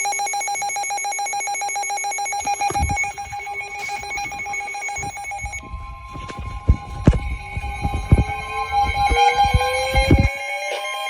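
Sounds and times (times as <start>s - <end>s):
low thumps: 2.4s - 10.3s.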